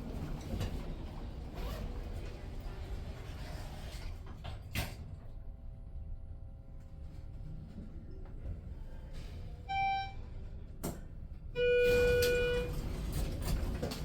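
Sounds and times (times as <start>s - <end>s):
elevator door clunk: 11.6s - 14.0s
elevator doors sliding and creaking: 11.6s - 14.0s.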